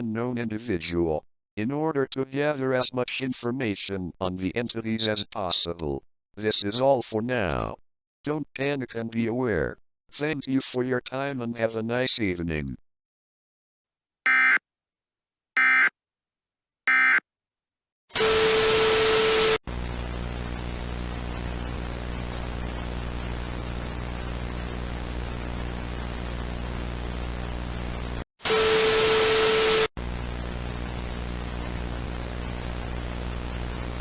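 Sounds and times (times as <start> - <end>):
digital data bursts: 14.3 - 14.6, 15.6 - 15.9, 16.9 - 17.2
buzzing static with low hum: 19.7 - 28.2, 30.0 - 34.0.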